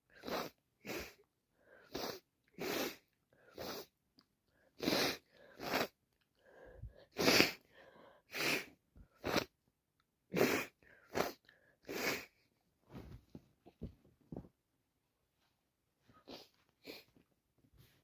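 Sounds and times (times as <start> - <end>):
person sneezing: 7.2 - 7.6.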